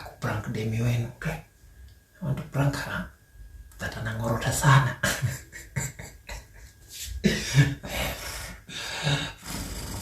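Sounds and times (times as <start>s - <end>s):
person breathing and snorting: 6.6s - 10.0s.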